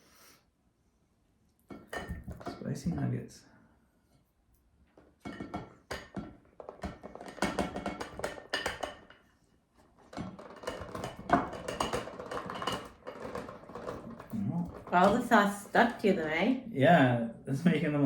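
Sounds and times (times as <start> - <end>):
plastic container clattering: 10.0 - 16.0.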